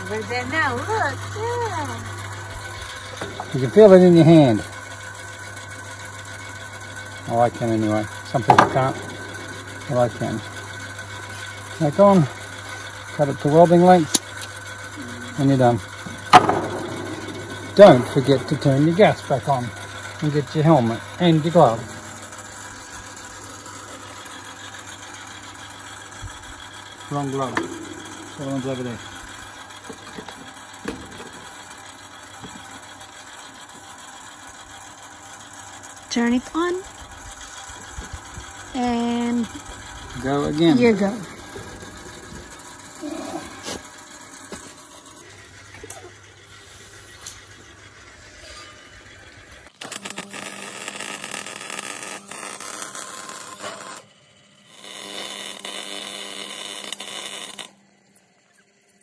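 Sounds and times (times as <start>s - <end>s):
welder arc crackling and hissing: 0.0s - 58.7s
machine running: 0.0s - 58.8s.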